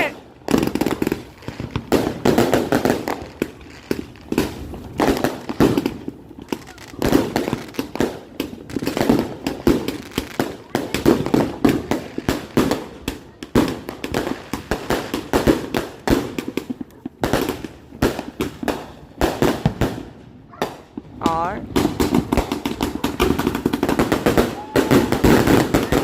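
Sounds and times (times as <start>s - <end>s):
fireworks bangs and crackles: 0.0s - 26.0s.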